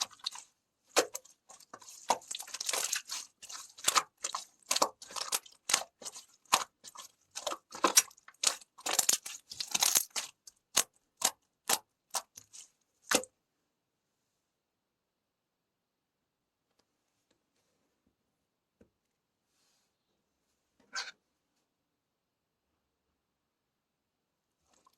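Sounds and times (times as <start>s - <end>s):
clay crunching and cracking: 0.0s - 13.3s.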